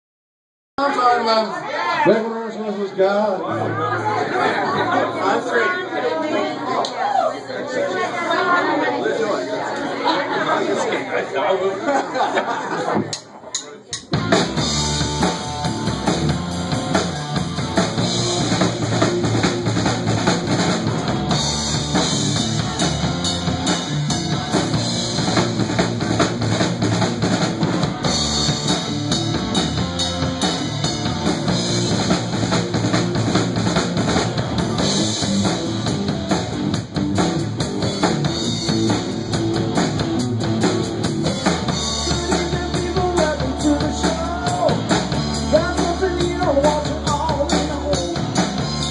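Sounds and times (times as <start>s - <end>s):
rock band playing: 12.7s - 48.9s
guitar: 13.9s - 48.9s
low bass line: 14.2s - 48.9s.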